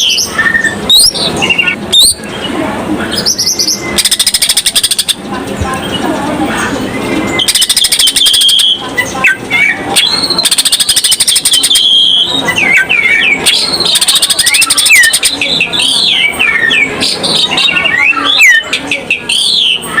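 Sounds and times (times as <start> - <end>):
bird singing trills and whistles: 0.0 - 5.2, 6.9 - 20.0.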